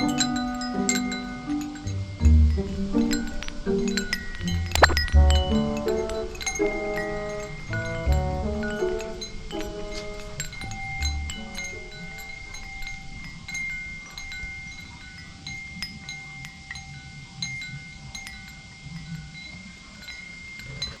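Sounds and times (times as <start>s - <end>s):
metal tube wind chime ringing: 0.0s - 21.0s.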